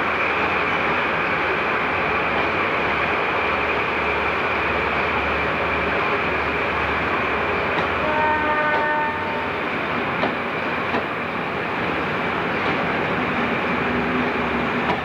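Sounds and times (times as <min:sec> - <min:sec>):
rail and hiss noise: 0:00.0 - 0:15.0
train horn: 0:07.8 - 0:09.8.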